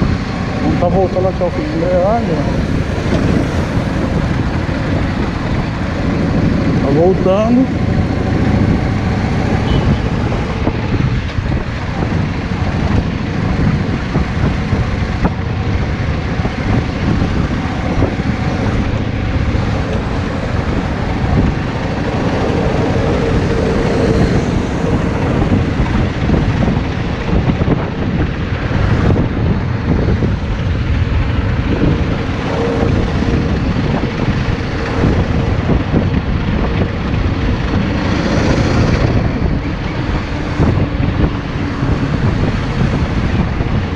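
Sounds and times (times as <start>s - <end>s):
motorcycle engine running: 0.0s - 43.9s.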